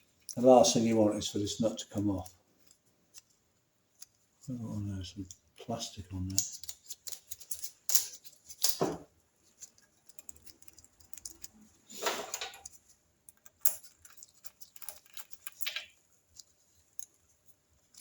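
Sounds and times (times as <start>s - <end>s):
metallic clicks and clinks: 12.2s - 16.0s.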